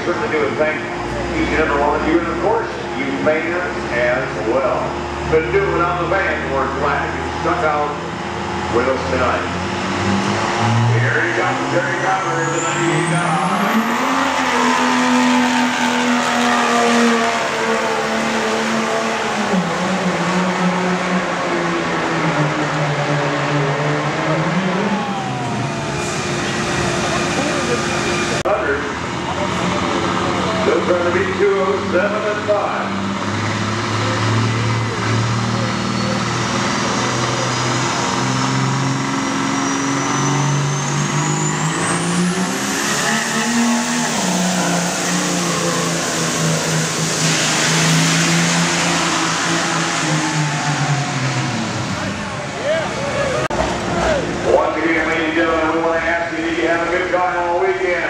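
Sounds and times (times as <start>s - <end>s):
diesel engine running under load: 0.0s - 58.0s
turbocharger whistle: 10.5s - 17.9s, 24.2s - 28.4s, 39.3s - 55.9s.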